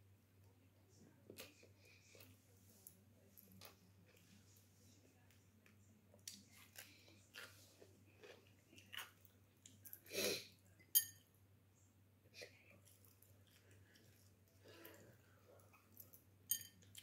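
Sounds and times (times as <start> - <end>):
wet chewing and crunching: 5.6 - 10.0, 12.5 - 16.2.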